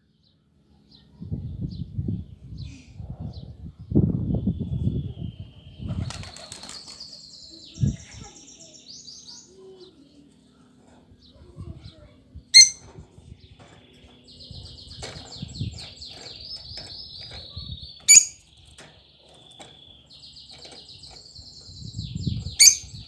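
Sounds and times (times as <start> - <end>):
cage bird trilling: 12.5 - 12.9, 14.3 - 23.0
sharp bird chirp: 12.6 - 12.9, 18.0 - 18.5, 21.8 - 23.0.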